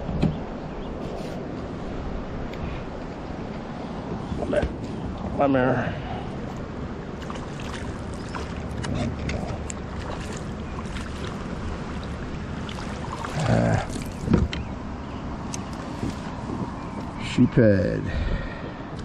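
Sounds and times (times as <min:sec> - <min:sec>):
water sloshing and splashing: 0:07.0 - 0:17.2
fish grunt: 0:08.2 - 0:10.5, 0:12.7 - 0:14.4.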